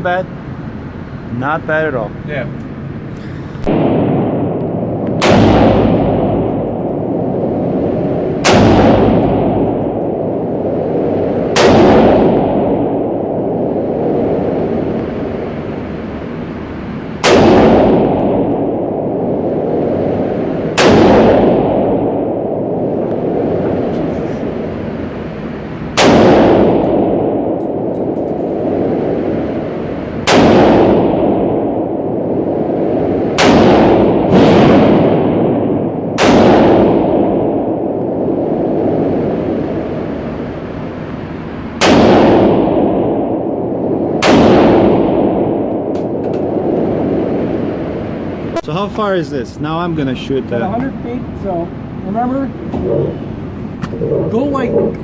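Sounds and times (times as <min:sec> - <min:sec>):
gunshots with echo: 0:03.7 - 0:07.4.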